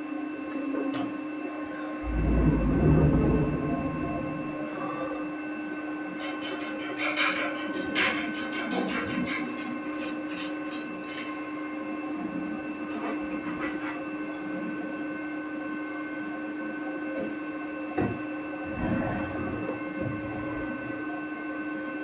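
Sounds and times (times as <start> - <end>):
low thumps: 2.0 - 5.2
machinery hum: 2.0 - 5.9.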